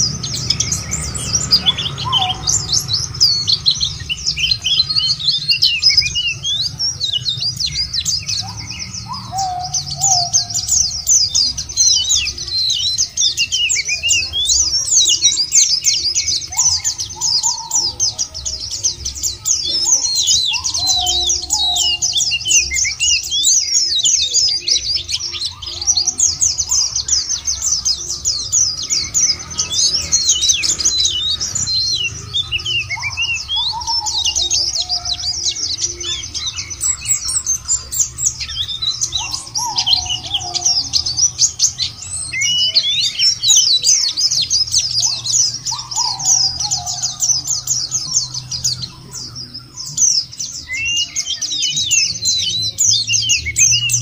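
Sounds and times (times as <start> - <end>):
bird whistling gliding notes: 0.0 - 54.0
small birds twittering: 0.0 - 54.0.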